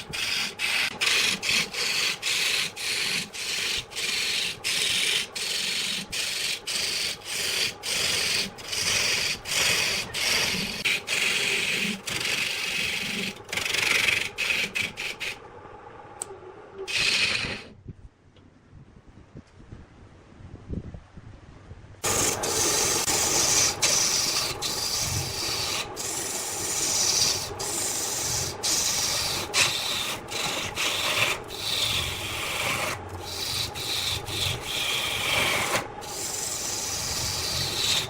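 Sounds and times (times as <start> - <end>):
abrasive strokes on wood: 0.0 - 15.4, 16.9 - 17.8, 22.0 - 38.0.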